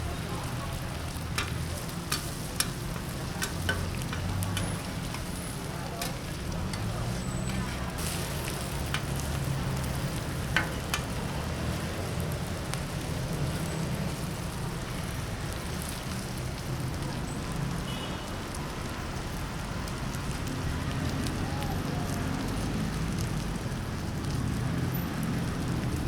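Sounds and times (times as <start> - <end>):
gas flame rumble: 0.0 - 17.7
food sizzling in a wok: 0.0 - 26.0.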